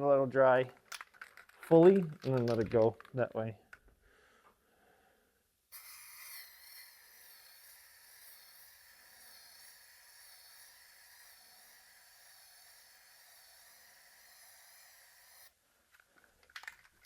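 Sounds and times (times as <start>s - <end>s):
aerosol spray can hissing: 5.7s - 15.5s.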